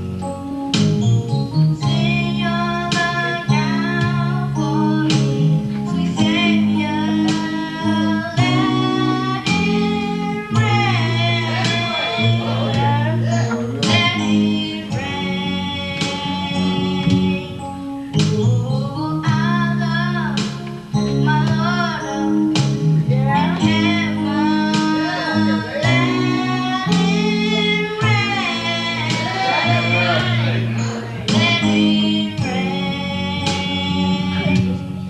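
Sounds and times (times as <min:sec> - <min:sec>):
plucked guitar chords: 0:00.0 - 0:35.0
person singing gospel song: 0:01.0 - 0:35.0.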